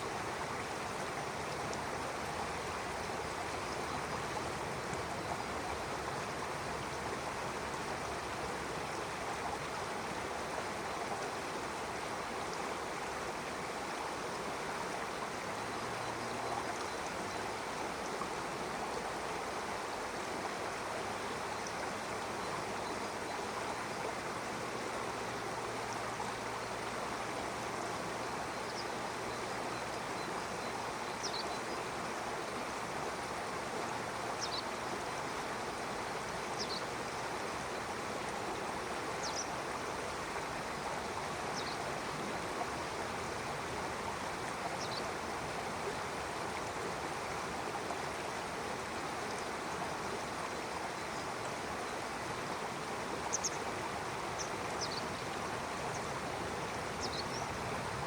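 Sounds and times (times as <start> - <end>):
stream flowing over rocks: 0.0 - 58.0.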